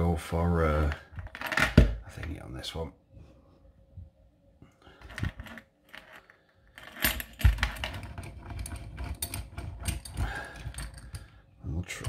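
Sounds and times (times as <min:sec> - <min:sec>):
metallic clicks and rattles: 0:05.0 - 0:11.4.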